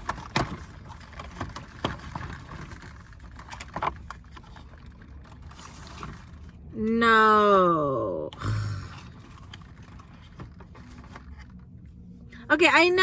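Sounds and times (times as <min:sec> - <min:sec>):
cardboard clicks and rustles: 0:00.0 - 0:06.7, 0:09.0 - 0:12.0.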